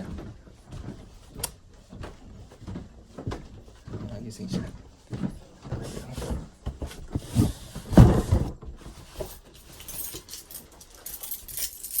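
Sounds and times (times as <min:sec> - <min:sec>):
dull knocks and handling noises: 0:00.0 - 0:10.7
keys jingling: 0:09.3 - 0:12.0.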